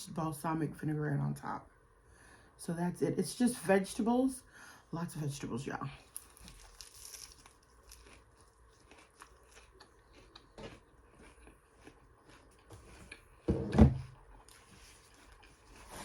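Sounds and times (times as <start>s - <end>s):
crunching salad greens: 6.1s - 13.4s.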